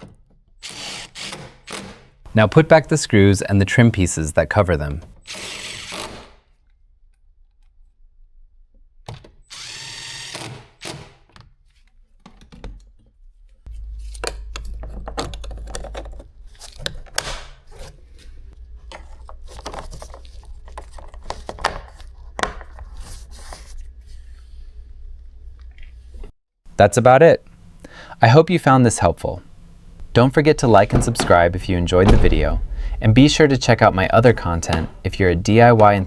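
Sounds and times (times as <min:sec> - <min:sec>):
cordless drill driving screws: 0:00.6 - 0:02.1, 0:05.2 - 0:06.3, 0:09.5 - 0:11.2
plastic trim clicks and knocks: 0:30.7 - 0:35.2.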